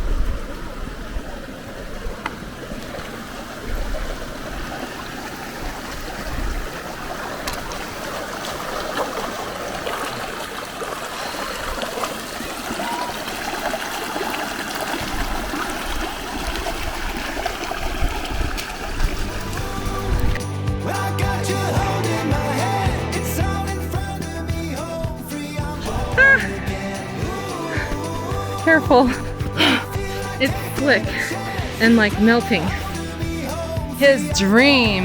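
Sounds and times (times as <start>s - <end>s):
mountain stream rushing: 0.0s - 24.0s, 24.7s - 35.0s
low rumbles: 19.0s - 35.0s.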